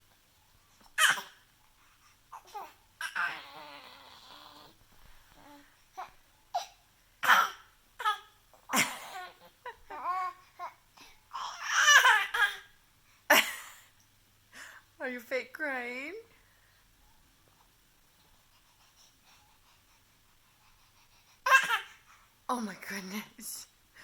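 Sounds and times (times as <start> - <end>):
baby coughing: 1.0 - 1.4, 6.5 - 9.4, 11.4 - 12.7, 21.5 - 21.9
baby crying: 1.0 - 1.4, 2.3 - 4.7, 5.4 - 12.7, 21.4 - 22.0.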